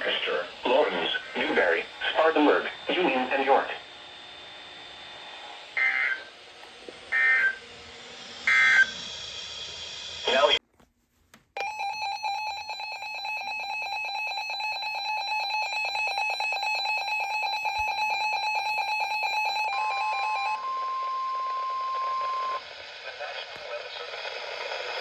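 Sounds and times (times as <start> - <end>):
steady alarm tone: 0.0 - 10.6, 11.6 - 22.8
rapidly pulsing electronic beep: 7.1 - 10.6.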